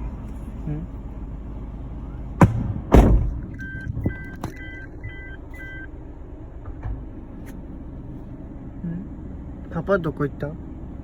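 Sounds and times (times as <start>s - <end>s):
loud bangs: 2.4s - 3.6s
short electronic beeps: 3.5s - 5.9s.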